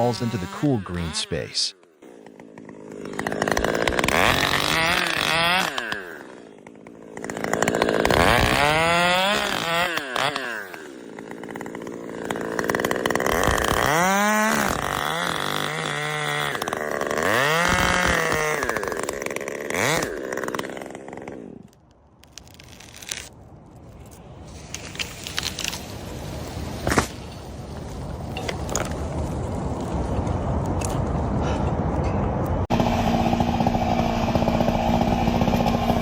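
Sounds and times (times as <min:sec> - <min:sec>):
chainsaw revving: 0:00.0 - 0:21.8, 0:32.7 - 0:36.0.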